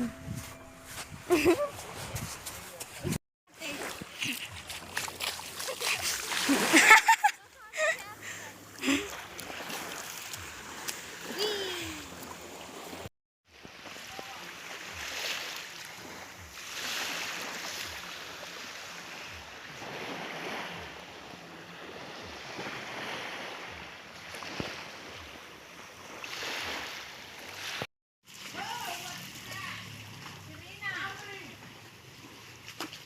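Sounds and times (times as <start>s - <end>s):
wind on microphone: 0.0s - 3.2s
waves breaking: 1.4s - 33.0s.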